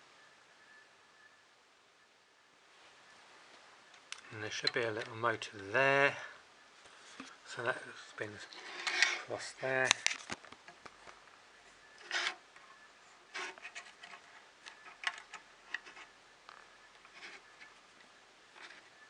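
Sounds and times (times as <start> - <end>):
hands rubbing and clicking parts: 12.0 - 19.0.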